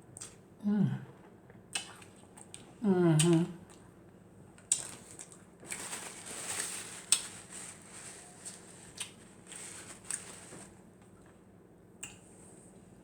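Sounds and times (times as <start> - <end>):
soft wet chewing: 0.1 - 12.4
cracker crunching: 4.6 - 11.4.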